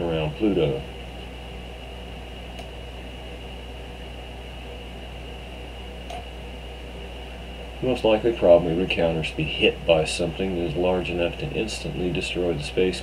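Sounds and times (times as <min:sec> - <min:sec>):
background hum and hiss: 0:00.0 - 0:13.0
faint high whine: 0:00.0 - 0:13.0.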